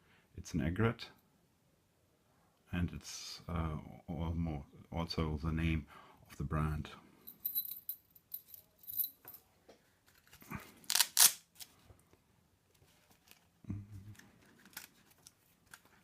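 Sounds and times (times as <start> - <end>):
padlock and metal tools clinking: 7.3 - 9.4.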